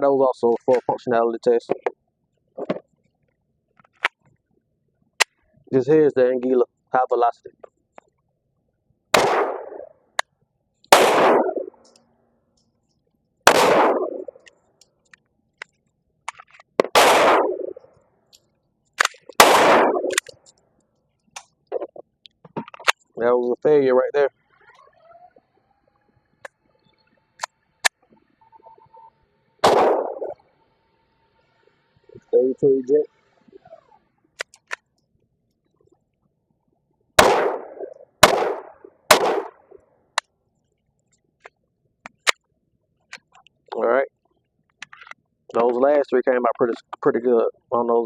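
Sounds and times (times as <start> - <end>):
pistol shots echoing: 9.2 - 9.9, 10.9 - 11.7, 13.5 - 14.3, 16.8 - 17.8, 19.0 - 20.3, 29.6 - 30.4, 37.2 - 39.6.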